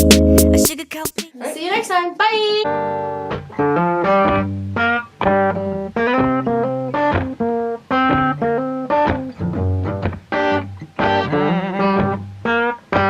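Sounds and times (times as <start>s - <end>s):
plucked string instrument: 0.0s - 0.7s, 2.7s - 13.0s
bass line: 0.0s - 0.8s.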